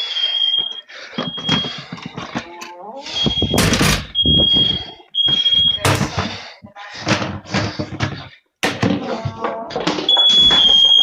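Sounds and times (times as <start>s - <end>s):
smoke alarm high-pitched beep: 0.0s - 1.8s, 3.1s - 6.0s, 10.1s - 11.0s
voice: 2.3s - 3.3s.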